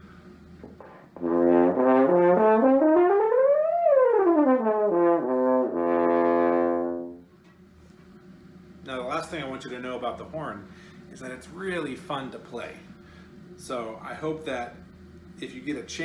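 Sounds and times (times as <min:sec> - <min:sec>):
solo french horn: 0:01.2 - 0:07.2.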